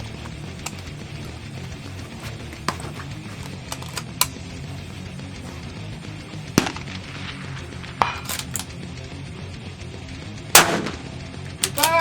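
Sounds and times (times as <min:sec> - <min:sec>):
faint background music: 0:00.0 - 0:12.0
rifle shots: 0:06.3 - 0:08.9, 0:10.5 - 0:12.0.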